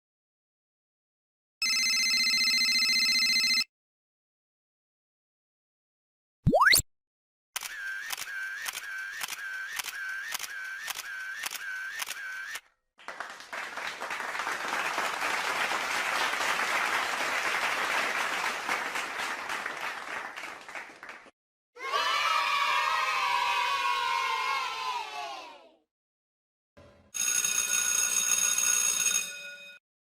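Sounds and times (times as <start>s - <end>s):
evenly spaced clicks: 7.6s - 12.6s
crowd applauding: 13.0s - 21.4s.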